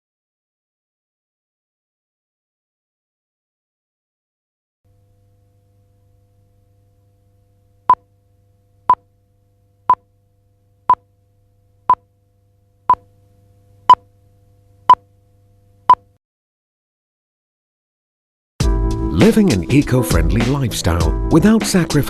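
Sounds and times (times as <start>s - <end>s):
faint low hum: 4.9s - 16.2s.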